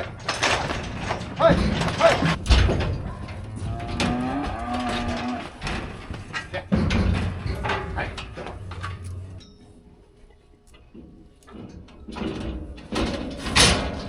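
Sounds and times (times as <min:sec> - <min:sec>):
metal chute clanks and rattles: 0:00.0 - 0:09.8, 0:10.8 - 0:14.0
cow bawling: 0:03.6 - 0:05.6.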